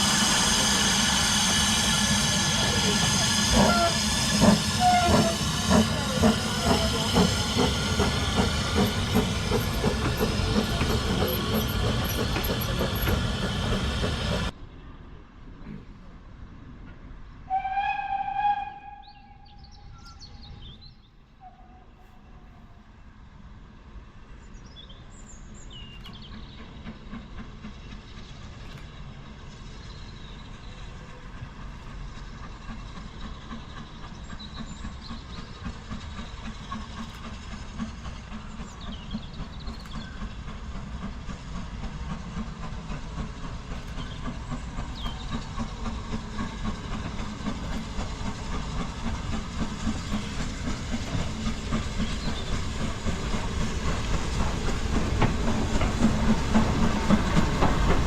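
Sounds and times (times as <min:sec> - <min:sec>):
steam locomotive approaching: 0:00.0 - 0:58.0.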